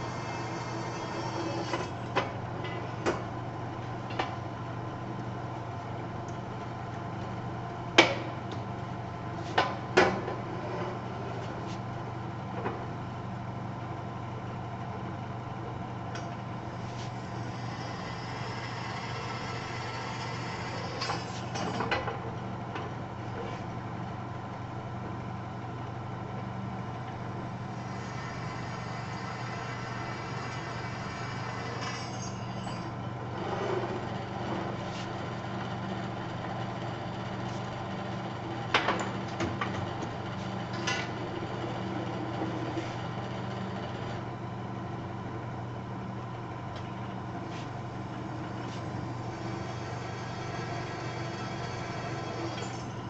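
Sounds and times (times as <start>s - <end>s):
drill bit drilling steel: 0.0s - 1.9s
drill press motor running: 0.0s - 3.0s, 17.0s - 21.6s, 27.7s - 44.3s, 48.2s - 53.0s.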